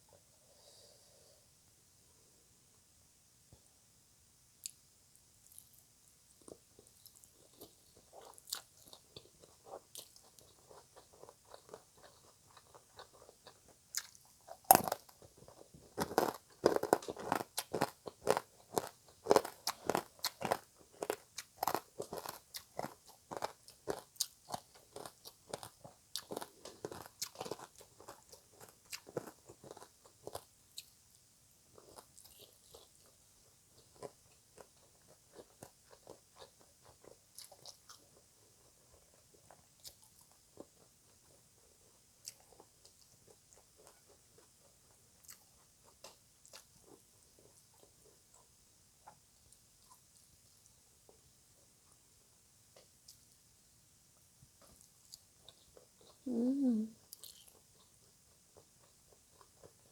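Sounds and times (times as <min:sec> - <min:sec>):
person chewing crunchy food: 0:06.4 - 0:51.2, 0:57.0 - 0:59.9.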